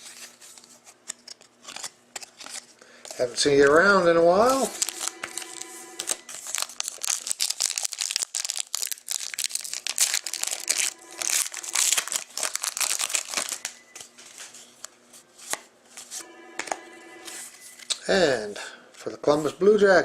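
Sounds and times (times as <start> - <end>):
wrapper being torn and crinkled: 6.3 - 13.8.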